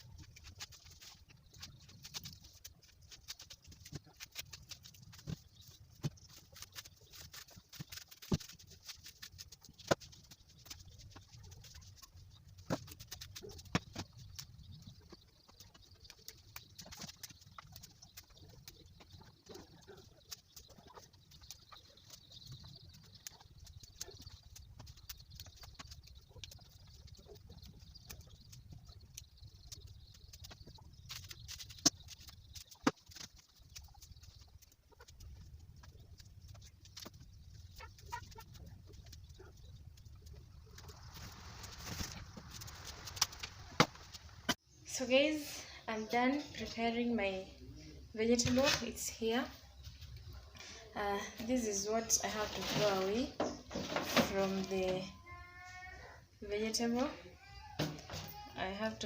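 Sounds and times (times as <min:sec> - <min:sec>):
leaf stems clicking: 0:00.0 - 0:44.6
stems snapping: 0:15.5 - 0:39.2, 0:40.2 - 0:44.3.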